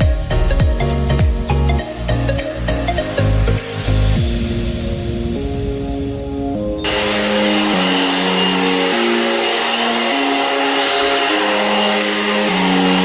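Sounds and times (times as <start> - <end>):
background music: 0.0 - 13.0
hair dryer brush blowing: 6.9 - 13.0.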